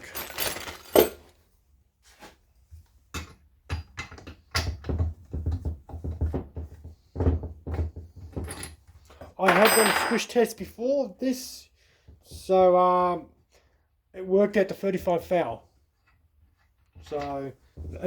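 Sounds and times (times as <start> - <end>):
tools knocking and rattling: 0.0 - 1.3, 3.1 - 10.3.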